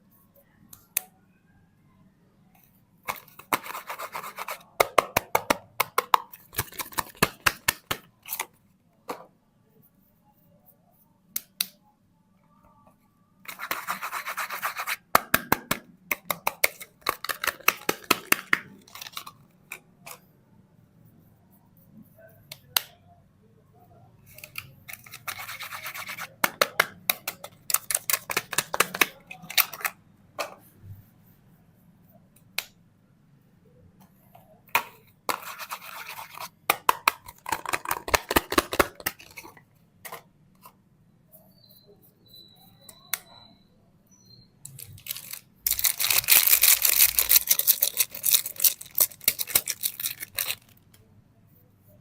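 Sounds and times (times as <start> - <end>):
soap wrapper crackling: 44.7 - 50.7.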